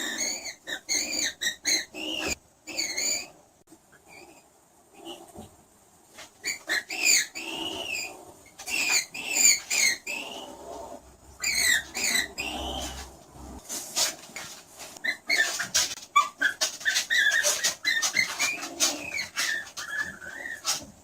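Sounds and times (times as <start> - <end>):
skunk chirps and clicks: 0.0 - 3.3, 6.4 - 10.5, 11.4 - 13.1, 15.0 - 20.9
skunk squealing: 0.0 - 3.3, 6.4 - 10.6, 11.4 - 13.1, 15.0 - 20.8.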